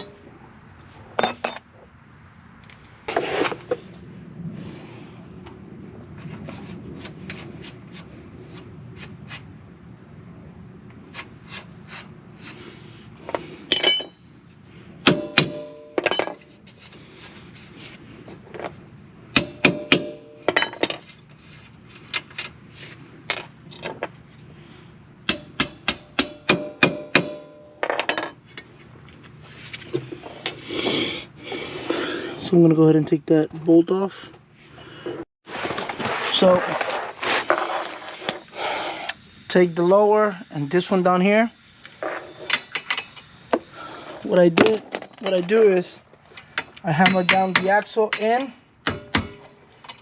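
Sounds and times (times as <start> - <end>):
hammer striking metal: 15.0 - 16.4, 19.4 - 20.8, 25.3 - 28.3, 48.8 - 49.5.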